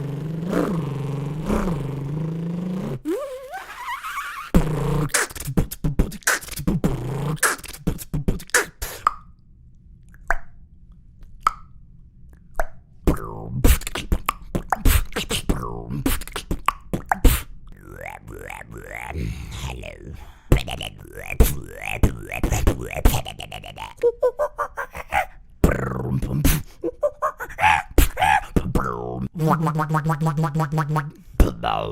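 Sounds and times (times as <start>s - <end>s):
person beatboxing: 0.0s - 3.6s, 4.6s - 9.2s, 13.0s - 31.9s
gliding vocal tones: 13.1s - 29.6s.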